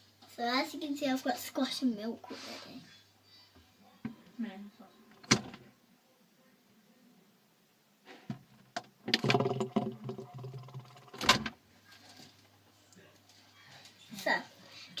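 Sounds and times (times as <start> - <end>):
fridge door shutting: 5.2 - 5.6
bottles clattering on fridge shelves: 8.2 - 11.6.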